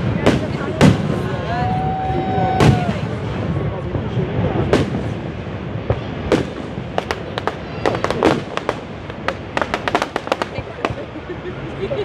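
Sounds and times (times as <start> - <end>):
fireworks cracking and banging: 0.0 - 12.0
low rumble: 0.0 - 12.0.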